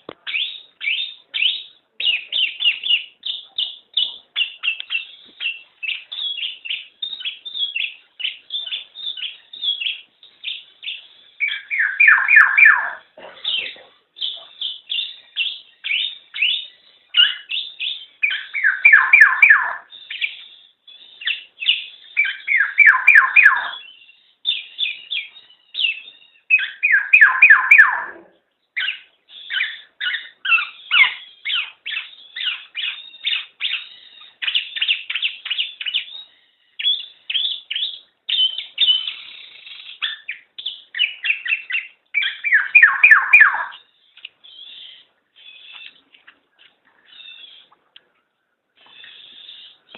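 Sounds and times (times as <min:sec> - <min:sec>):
bird calling downward notes: 0:41.0 - 0:43.8.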